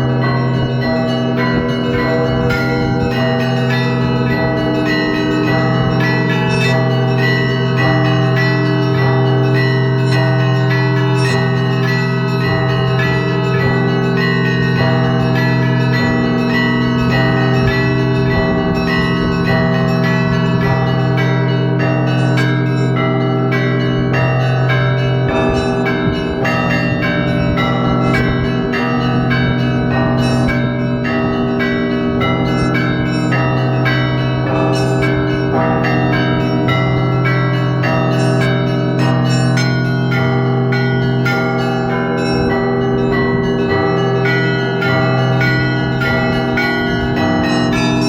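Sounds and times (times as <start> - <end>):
large bells humming: 0.0 - 48.0
small bells pealing: 0.0 - 48.0.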